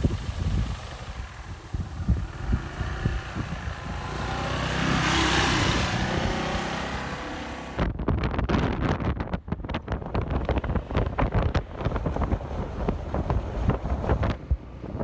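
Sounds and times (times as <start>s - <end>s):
vehicle passing: 0.0s - 7.8s
low rumbling: 0.0s - 15.0s.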